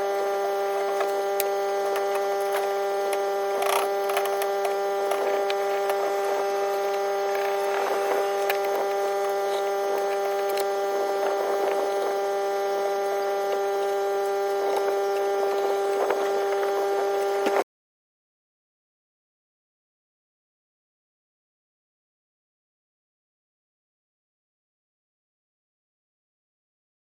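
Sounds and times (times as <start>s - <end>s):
steady machine hum: 0.0s - 17.6s.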